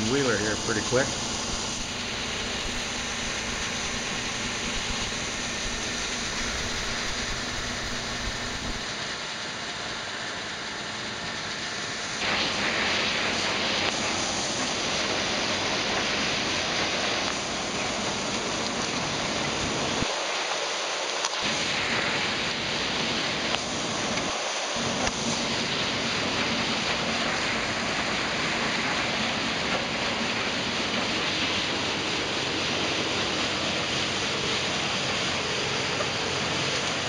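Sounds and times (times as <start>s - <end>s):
combine harvester running: 0.0s - 8.8s.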